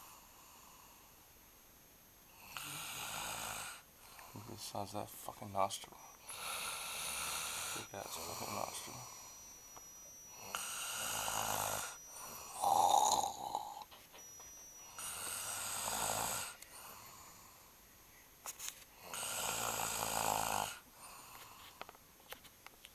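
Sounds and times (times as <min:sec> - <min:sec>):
man snoring: 0:02.3 - 0:05.0, 0:06.1 - 0:09.4, 0:10.3 - 0:13.9, 0:14.8 - 0:17.6, 0:19.0 - 0:21.4.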